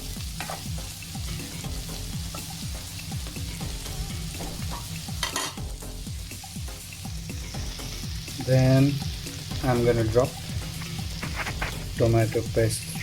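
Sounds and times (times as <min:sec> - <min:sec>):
food sizzling in a frying pan: 0:00.0 - 0:13.0
spatula scraping a pan: 0:00.4 - 0:00.7, 0:10.6 - 0:12.0.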